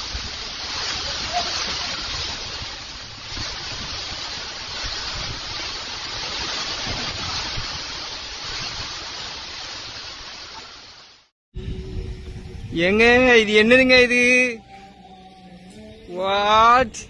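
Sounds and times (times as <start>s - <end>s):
wind buffeting microphone: 11.6s - 14.0s
storm wind rushing: 11.6s - 14.1s.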